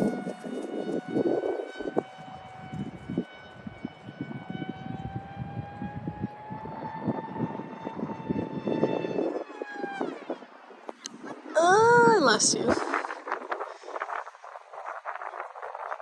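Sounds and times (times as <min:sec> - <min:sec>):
rc plane electric motor whining: 0:00.0 - 0:10.4
wind buffeting microphone: 0:00.0 - 0:16.0.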